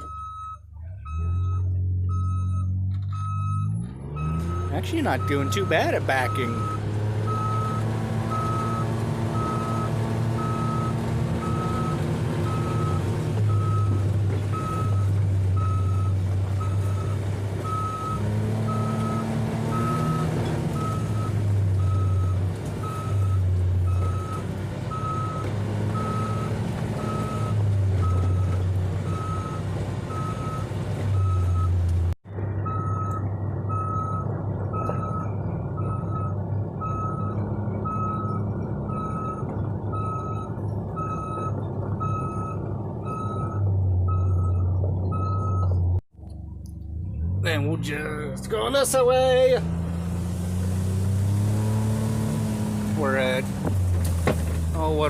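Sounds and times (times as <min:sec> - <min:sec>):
reverse alarm beeping: 0:00.0 - 0:20.2, 0:32.6 - 0:45.7
low engine hum: 0:00.0 - 0:55.0.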